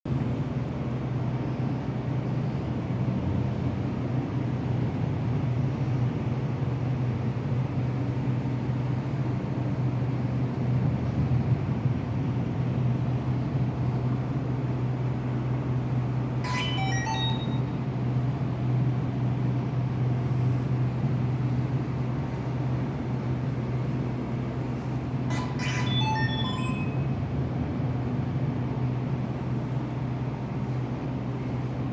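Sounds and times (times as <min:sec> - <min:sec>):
steady low hum: 0:00.1 - 0:31.9
quick stepping electronic beeps: 0:16.4 - 0:17.8, 0:25.3 - 0:27.1.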